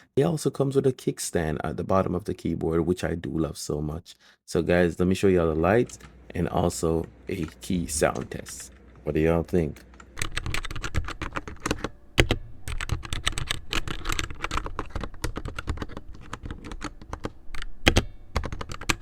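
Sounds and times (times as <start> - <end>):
mechanical keyboard typing: 5.4 - 19.0.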